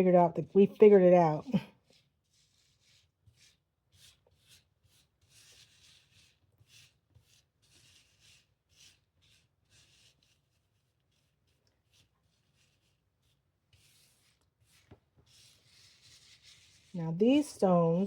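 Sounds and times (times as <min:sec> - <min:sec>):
brush sweeping rhinestones: 0:00.6 - 0:18.0.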